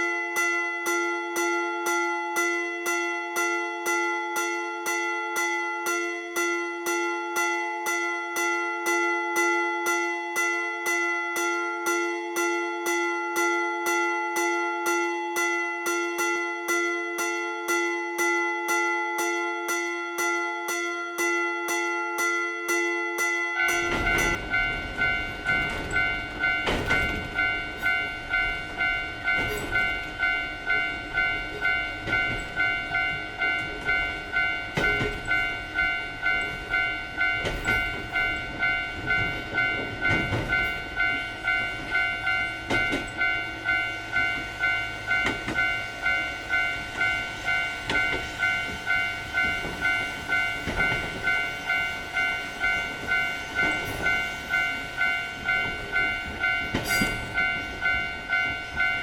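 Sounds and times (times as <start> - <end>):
level crossing alarm ringing: 0.0 - 59.0
train wheel clacks: 23.2 - 59.0
train running past: 23.6 - 59.0.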